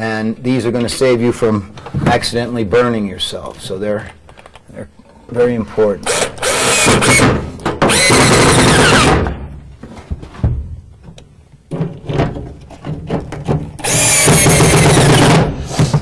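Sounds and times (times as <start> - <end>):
power drill motor whine: 6.1 - 7.2, 7.9 - 9.1, 13.8 - 15.3
knocks and clunks: 6.9 - 16.0.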